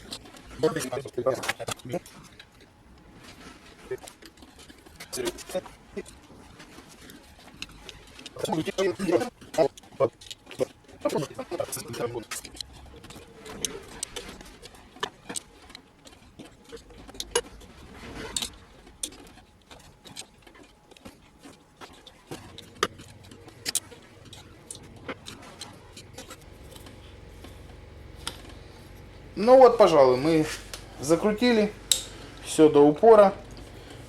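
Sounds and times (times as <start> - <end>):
hand tool clicking on metal: 31.9 - 32.5.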